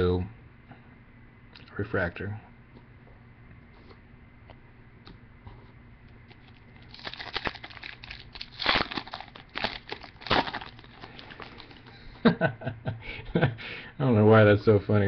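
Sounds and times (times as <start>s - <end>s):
foil wrapper crinkling: 6.3s - 12.0s.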